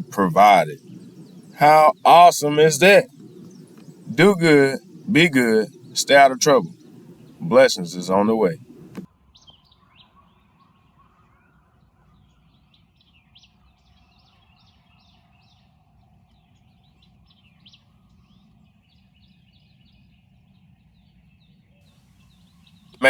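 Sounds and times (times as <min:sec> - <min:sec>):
low background rumble: 0:00.0 - 0:09.1
songbirds chirping: 0:00.0 - 0:23.0.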